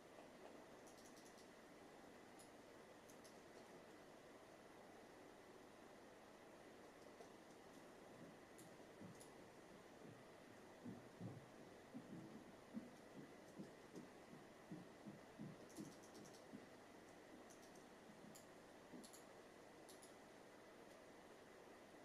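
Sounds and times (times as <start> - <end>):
faint high clicks: 0.2 - 1.6, 2.4 - 3.8, 15.5 - 20.2.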